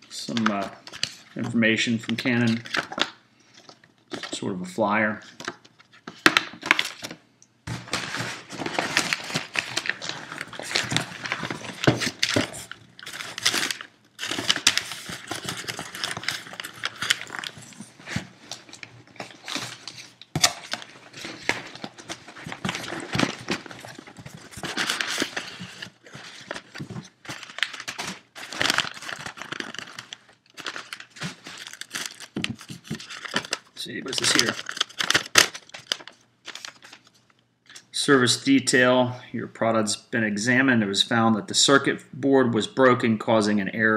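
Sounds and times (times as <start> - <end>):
paper rustling and crinkling: 5.3 - 37.4.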